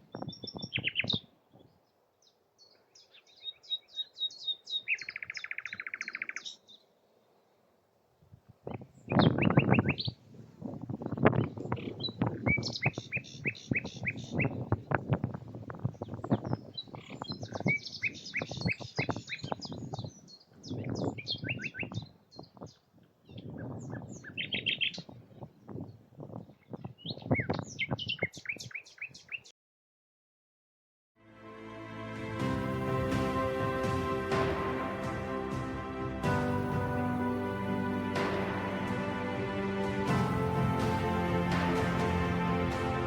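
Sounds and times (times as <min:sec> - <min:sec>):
songbird chirps and trills: 0:00.0 - 0:07.4.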